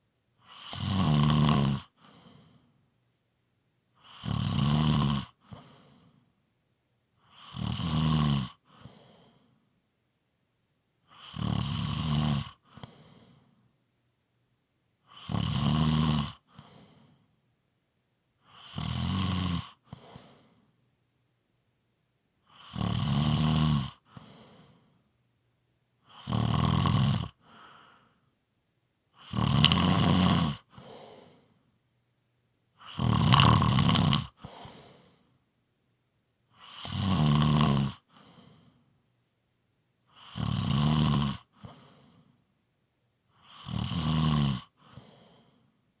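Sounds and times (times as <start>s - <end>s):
heavy snoring: 0.4s - 2.6s, 4.0s - 6.2s, 7.2s - 9.4s, 11.1s - 13.4s, 15.0s - 17.1s, 18.4s - 20.6s, 22.4s - 24.9s, 26.0s - 28.2s, 29.2s - 31.5s, 32.8s - 35.2s, 36.5s - 38.8s, 40.1s - 42.3s, 43.3s - 45.6s
quiet breath out: 1.9s - 2.9s, 5.4s - 6.4s, 8.6s - 9.7s, 12.6s - 13.7s, 16.5s - 17.4s, 19.8s - 20.8s, 24.0s - 25.1s, 27.3s - 28.3s, 30.6s - 31.7s, 34.3s - 35.4s, 38.0s - 39.0s, 41.4s - 42.5s, 44.7s - 45.8s.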